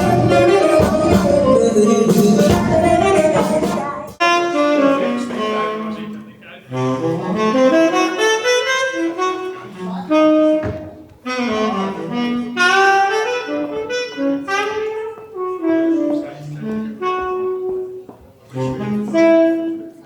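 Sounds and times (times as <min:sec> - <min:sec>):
big band swing jazz: 0:00.0 - 0:06.2, 0:06.8 - 0:17.9
saxophone melody: 0:00.0 - 0:20.0.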